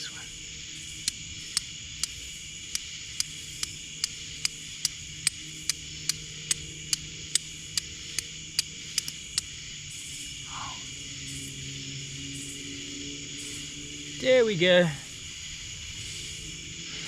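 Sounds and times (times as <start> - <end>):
night insects chorus: 0.0 - 17.0
steel striker scraping flint: 2.8 - 9.2.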